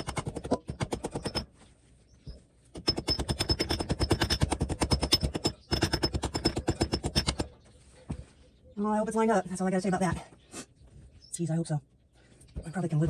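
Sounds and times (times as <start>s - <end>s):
rapid metal-on-metal tapping: 0.0s - 1.5s, 2.8s - 7.5s.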